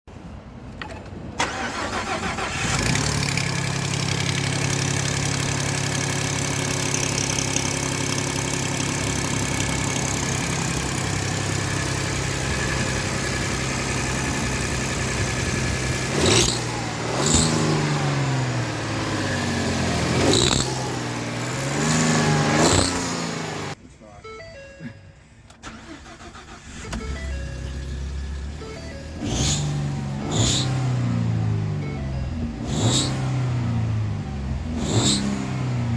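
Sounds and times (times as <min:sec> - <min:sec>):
truck engine with exhaust leak: 0:00.8 - 0:23.8.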